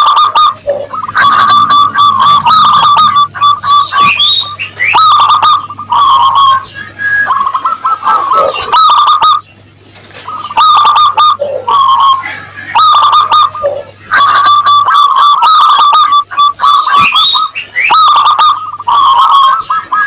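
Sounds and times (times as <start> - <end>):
dove cooing: 0.0 - 9.5, 10.2 - 20.0.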